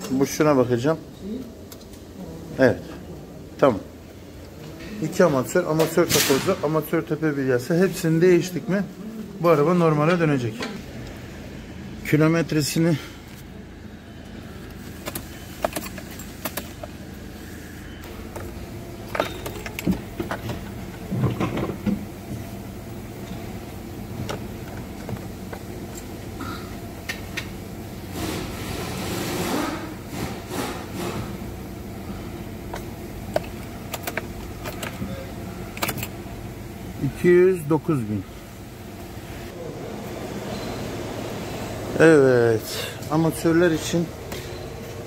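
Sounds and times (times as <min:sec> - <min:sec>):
workshop hum: 0:00.0 - 0:45.0
clicks and knocks of handling: 0:14.6 - 0:17.0, 0:32.7 - 0:35.1, 0:35.7 - 0:36.2.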